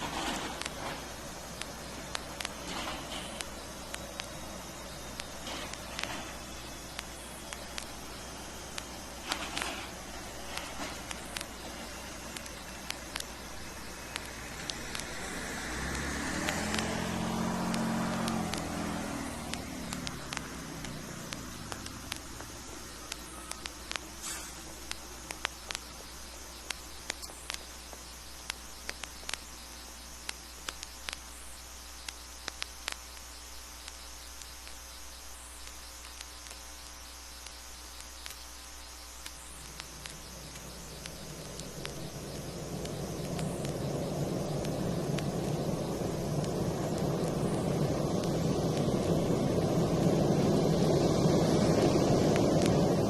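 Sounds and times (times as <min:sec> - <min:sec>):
steady drone: 0:00.0 - 0:31.2, 0:35.6 - 0:53.0
sharp clicks: 0:00.0 - 0:53.0
vehicle passing by: 0:14.8 - 0:20.8.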